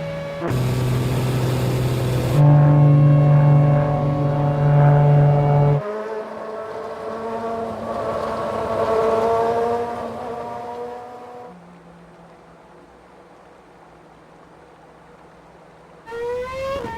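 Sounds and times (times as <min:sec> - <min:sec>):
engine running: 0:00.0 - 0:11.4.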